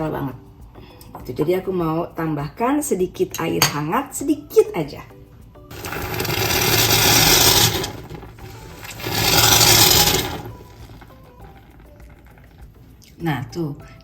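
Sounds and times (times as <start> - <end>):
water pouring: 5.7 - 11.6.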